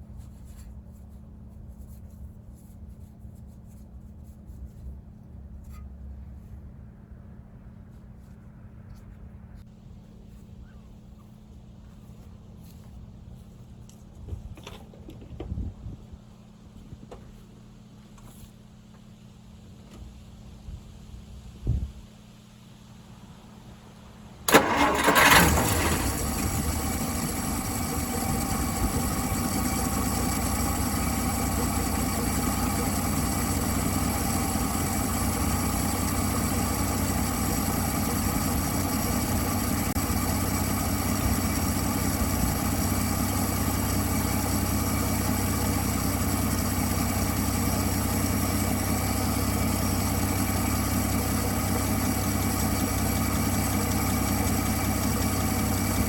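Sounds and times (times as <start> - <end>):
car engine starting and idling: 24.2 - 56.0.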